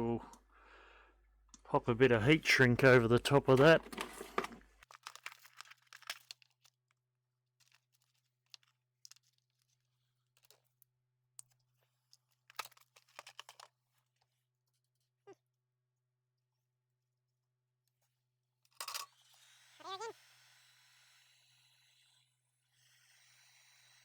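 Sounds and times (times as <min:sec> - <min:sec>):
clicks and rustles of handling wires: 0:02.5 - 0:07.0, 0:07.6 - 0:14.3.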